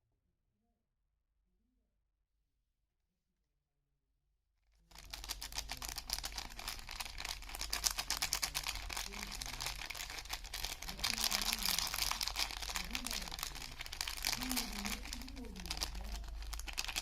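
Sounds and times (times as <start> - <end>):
packaging crinkling: 4.9 - 17.0.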